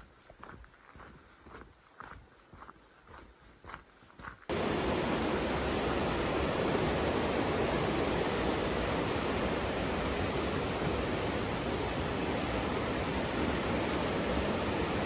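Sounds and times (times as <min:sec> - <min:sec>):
footsteps on a trail: 0:00.0 - 0:04.6
river water rushing: 0:04.5 - 0:15.0.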